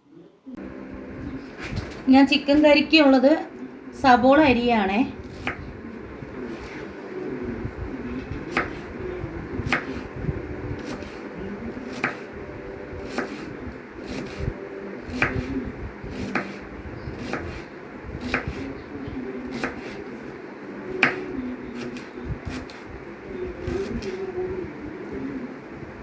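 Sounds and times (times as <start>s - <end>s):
knife chopping onions: 5.2s - 5.6s, 8.2s - 9.0s, 9.6s - 10.1s, 10.8s - 12.3s, 13.0s - 18.8s, 19.4s - 20.2s, 21.0s - 22.9s, 23.5s - 24.3s.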